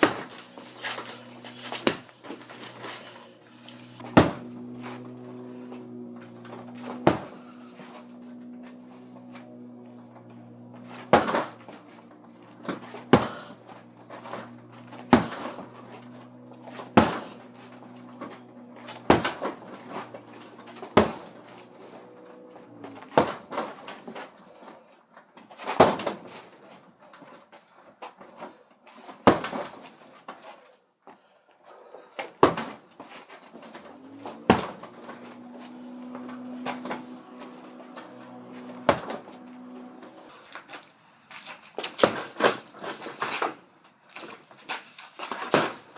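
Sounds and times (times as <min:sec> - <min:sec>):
low steady hum: 0:00.0 - 0:24.7, 0:33.5 - 0:40.6
strikes thudding on heavy bag: 0:03.8 - 0:05.0, 0:06.8 - 0:07.5, 0:10.9 - 0:11.7, 0:12.6 - 0:13.6, 0:14.2 - 0:15.7, 0:16.7 - 0:18.2, 0:18.9 - 0:20.1, 0:20.8 - 0:21.3, 0:23.0 - 0:23.6, 0:29.2 - 0:29.8, 0:32.4 - 0:32.8, 0:34.2 - 0:35.2, 0:38.6 - 0:39.5.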